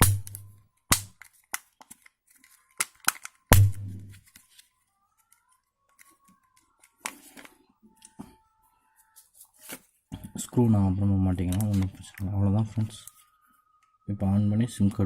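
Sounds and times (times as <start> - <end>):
plastic phone housing clicks and snaps: 2.8 - 3.4.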